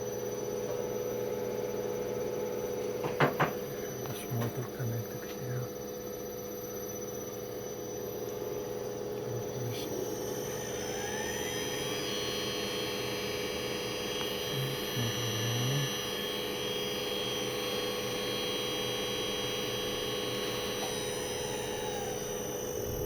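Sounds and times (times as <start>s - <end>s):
electric motor whine: 0.0s - 23.0s.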